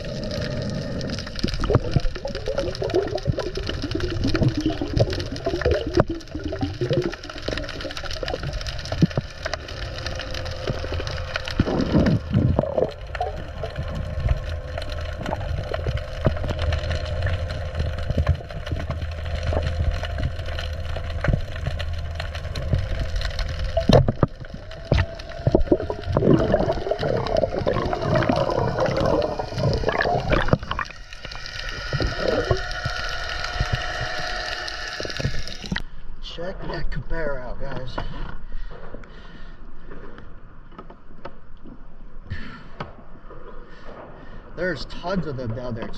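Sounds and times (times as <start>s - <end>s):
water churning and gurgling: 0.0s - 35.9s.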